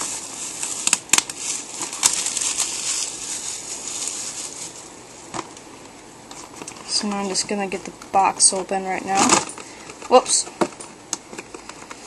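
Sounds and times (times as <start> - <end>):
packaging rustling and crinkling: 0.0 - 5.7.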